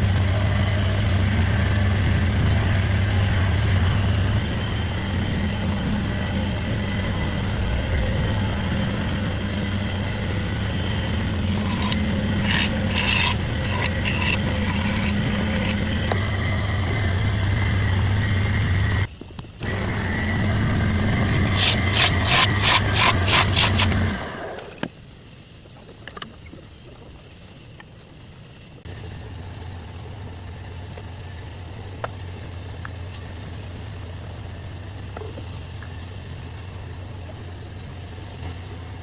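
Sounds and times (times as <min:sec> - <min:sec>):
woodworking machine motor running: 0:00.0 - 0:24.7
tool strokes on wood: 0:10.7 - 0:17.6, 0:21.1 - 0:24.2.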